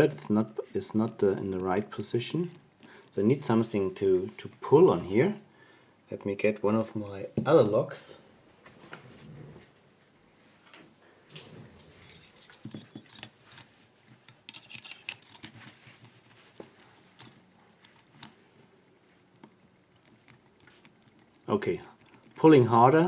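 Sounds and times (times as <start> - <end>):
padlocks clicking and clinking: 0.0 - 3.6, 11.3 - 15.7, 17.1 - 18.3.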